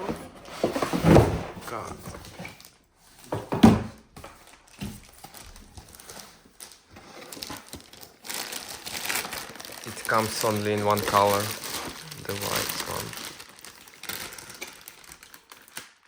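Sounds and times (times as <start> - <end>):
objects knocking and clattering: 0.0 - 2.6, 3.2 - 5.9
packaging crinkling: 4.4 - 16.0.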